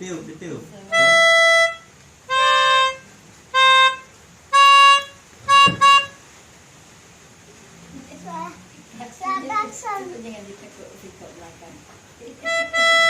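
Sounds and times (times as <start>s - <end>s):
melodica notes: 0.9s - 6.2s, 12.4s - 13.0s.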